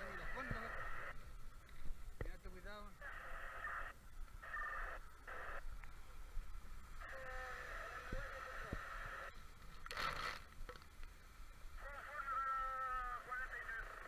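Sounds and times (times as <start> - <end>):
radio static burst: 0.0 - 1.2, 2.4 - 5.7, 7.0 - 10.5, 11.8 - 14.0
tinny radio transmissions: 0.0 - 14.0.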